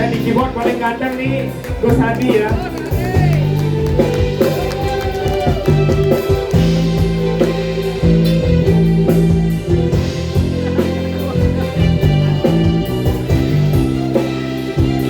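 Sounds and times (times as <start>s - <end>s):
bass line: 0.0s - 15.0s
drum hits: 0.0s - 15.0s
live band playing pop ballad: 0.0s - 15.0s.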